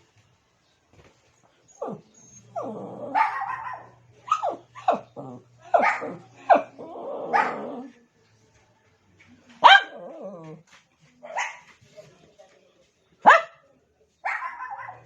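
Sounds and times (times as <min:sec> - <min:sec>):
dog growling: 0:01.8 - 0:03.6, 0:04.6 - 0:08.0
dog whining: 0:01.8 - 0:05.4
small dog barking: 0:03.0 - 0:05.1, 0:05.7 - 0:06.7, 0:07.3 - 0:07.9, 0:09.6 - 0:10.3, 0:11.2 - 0:11.7, 0:13.2 - 0:13.6, 0:14.2 - 0:15.0.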